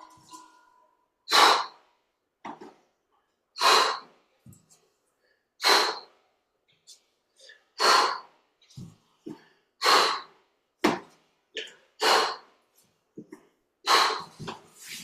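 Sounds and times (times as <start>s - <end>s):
person breathing hard: 1.3s - 1.8s, 3.6s - 4.2s, 5.2s - 6.2s, 7.3s - 10.4s, 11.7s - 12.6s, 13.8s - 15.0s.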